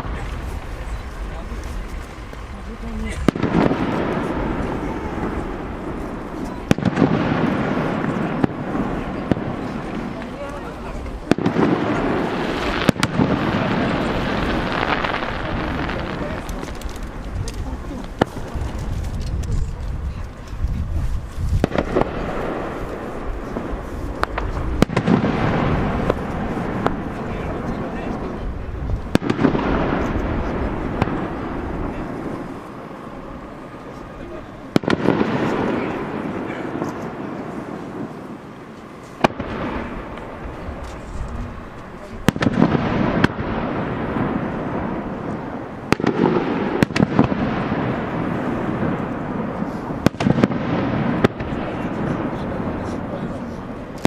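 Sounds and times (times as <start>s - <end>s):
continuous dense noise: 0.0s - 54.0s
firework bangs and crackles: 0.0s - 54.0s
low rumble of firework bursts: 0.0s - 54.0s.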